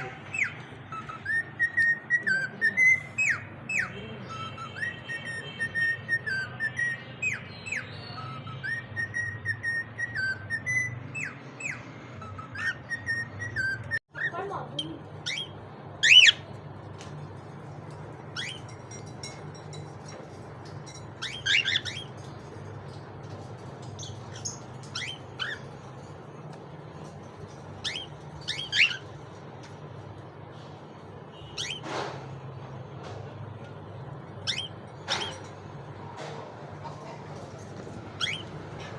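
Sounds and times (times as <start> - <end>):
cockatiels whistling: 0.2 - 14.4, 15.2 - 16.6, 18.2 - 19.4, 20.8 - 26.1, 27.0 - 29.8, 31.3 - 31.9, 33.6 - 35.5, 37.8 - 38.9.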